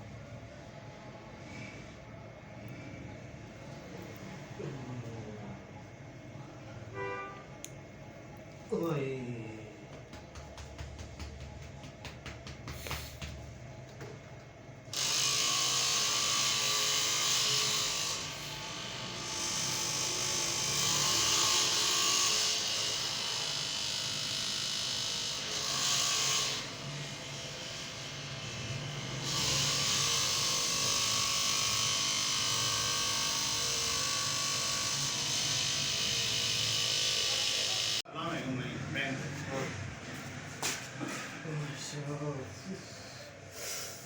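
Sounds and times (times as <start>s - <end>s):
small electric motor buzzing: 14.9s - 38.0s.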